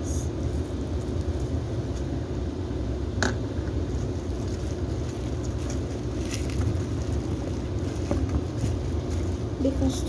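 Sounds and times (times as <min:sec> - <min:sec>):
wet squishes of mixing: 0:03.9 - 0:10.0.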